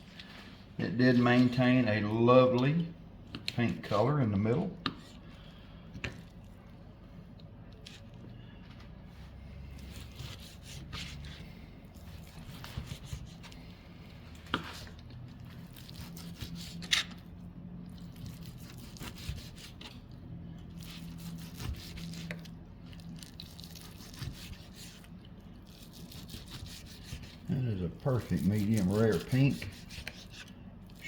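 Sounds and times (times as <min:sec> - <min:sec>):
knife slicing meat: 0:09.8 - 0:13.7, 0:14.3 - 0:17.3, 0:17.9 - 0:22.6, 0:23.2 - 0:31.0.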